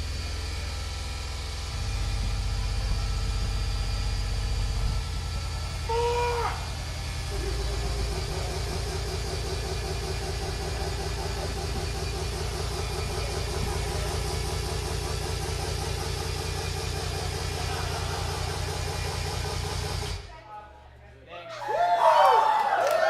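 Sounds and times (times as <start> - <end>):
electronic noise music: 1.7 - 19.7.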